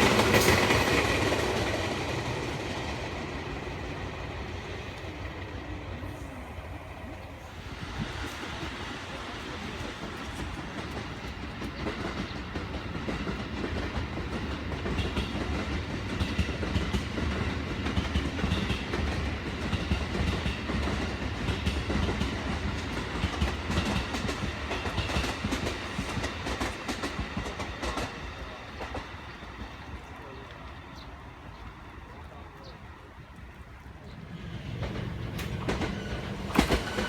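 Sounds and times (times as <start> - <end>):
train rumbling: 0.0 - 37.0
wheels clicking over rail joints: 8.1 - 37.0.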